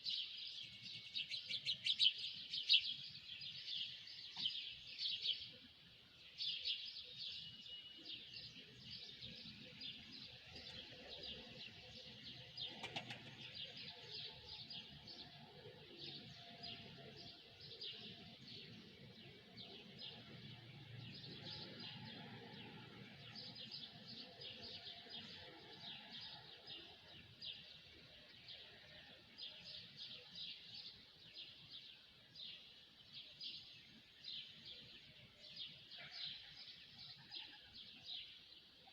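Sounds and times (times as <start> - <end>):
flock of birds chirping: 0.0 - 38.9.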